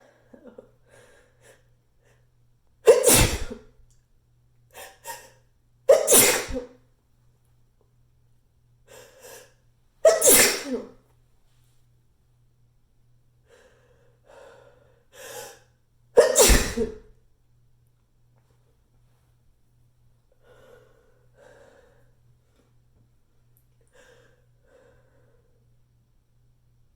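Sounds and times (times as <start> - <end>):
person sneezing: 2.9 - 3.7, 5.9 - 6.8, 10.0 - 11.0, 16.2 - 17.1.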